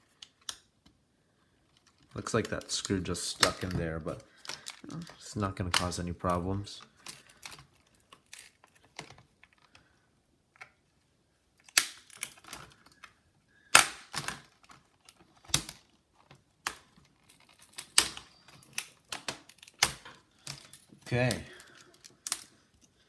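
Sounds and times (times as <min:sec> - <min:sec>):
plastic bezel snapping: 0:11.7 - 0:12.6.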